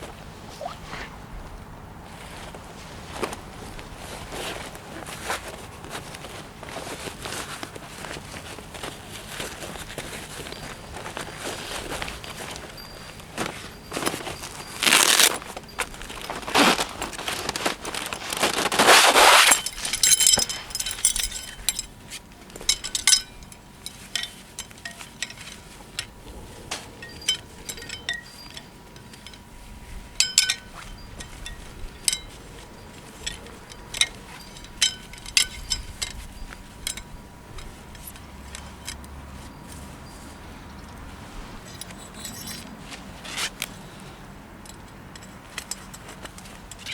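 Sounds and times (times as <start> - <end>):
noisy rustling: 0.0 - 44.4
utensils clinking and knocking: 19.5 - 22.0.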